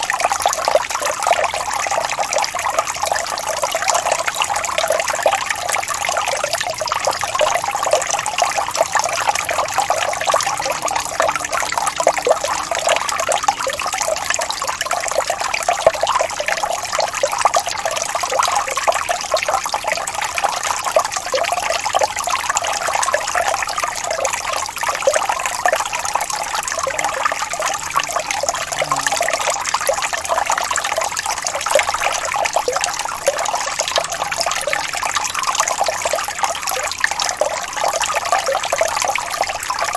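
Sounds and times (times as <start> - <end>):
fountain water falling into pool: 0.0 - 39.9.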